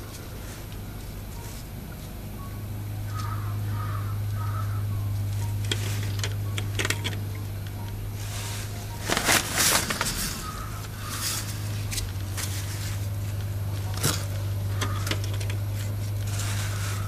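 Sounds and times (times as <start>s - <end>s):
steady low hum: 0.0s - 17.0s
faint bird calls: 2.4s - 5.6s, 9.8s - 11.9s, 14.6s - 15.2s
metal parts clattering: 9.0s - 13.0s.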